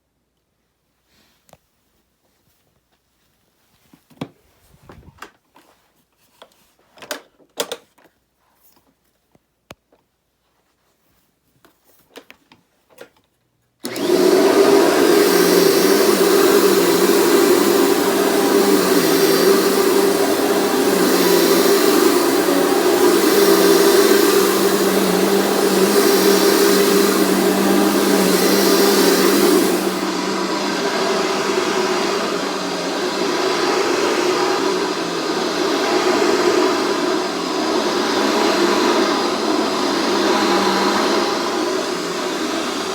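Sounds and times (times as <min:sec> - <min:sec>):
vacuum cleaner running: 0:13.8 - 0:42.9.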